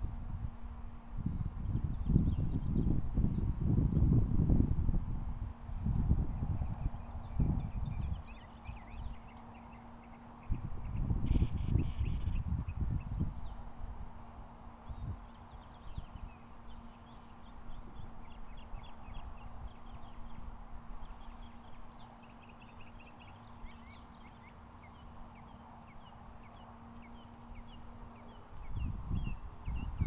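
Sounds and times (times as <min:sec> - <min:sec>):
low wind rumble: 0:00.0 - 0:30.0
steady low hum: 0:00.0 - 0:30.0
birds chirping: 0:06.6 - 0:13.6, 0:14.9 - 0:30.0.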